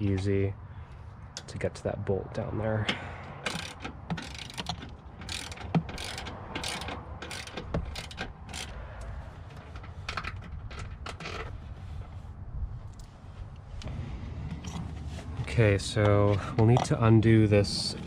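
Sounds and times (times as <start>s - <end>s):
socket ratchet clicking: 3.4s - 9.1s.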